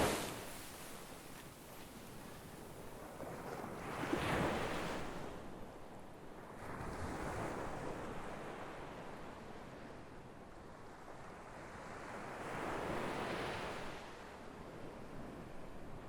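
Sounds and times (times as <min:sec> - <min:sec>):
ocean waves rushing in: 0:00.0 - 0:01.4.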